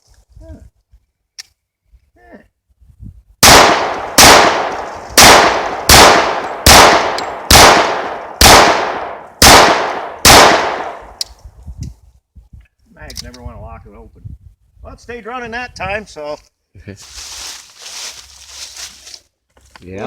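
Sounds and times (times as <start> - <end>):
pistol shots with echo: 3.4 - 11.2.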